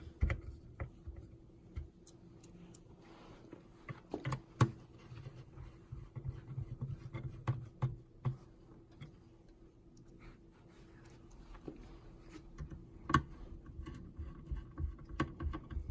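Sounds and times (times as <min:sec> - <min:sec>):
plastic parts clicking and knocking: 0:12.6 - 0:15.9.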